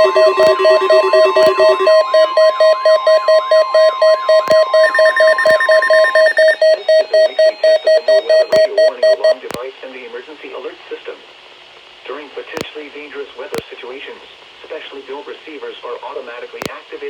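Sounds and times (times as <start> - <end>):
steady alarm tone: 0.0 - 9.4
alert receivers beeping rapidly: 0.0 - 9.5.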